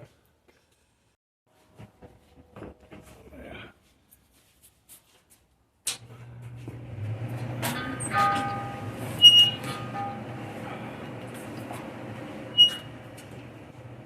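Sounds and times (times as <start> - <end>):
steady low hum: 6.0 - 14.0.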